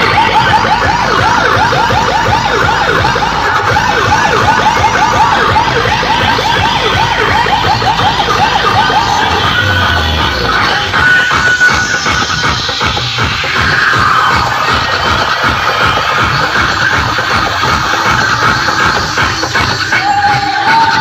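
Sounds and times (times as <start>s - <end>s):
low pulsing bass: 0.0s - 12.3s
yelping siren effect: 0.0s - 12.4s.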